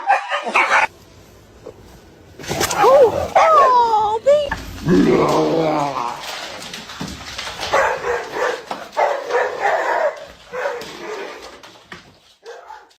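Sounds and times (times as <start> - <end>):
dog barking: 0.0 - 0.9, 7.7 - 11.4, 12.4 - 13.0.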